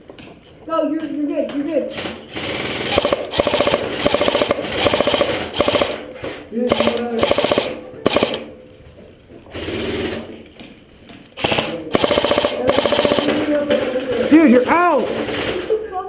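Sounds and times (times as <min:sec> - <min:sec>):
airsoft guns firing automatic bursts: 0:02.2 - 0:08.6, 0:11.4 - 0:14.4.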